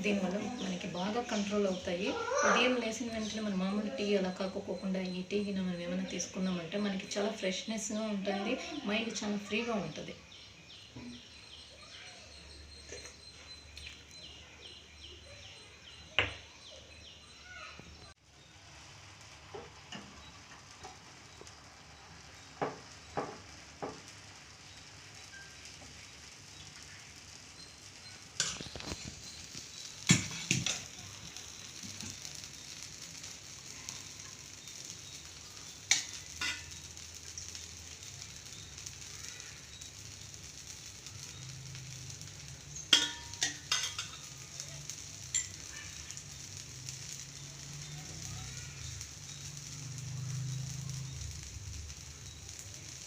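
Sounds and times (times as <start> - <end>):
faint hiss: 17.4 - 53.0
kitchen utensils clinking: 28.4 - 32.2, 35.8 - 36.9, 42.8 - 44.4, 45.0 - 46.2.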